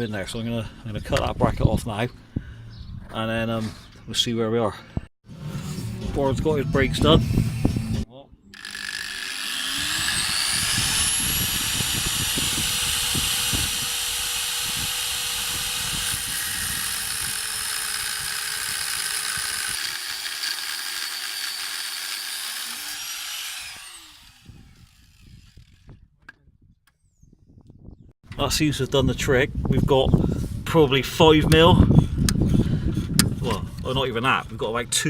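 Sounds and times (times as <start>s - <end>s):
power cutting tool cutting metal: 8.6s - 25.8s.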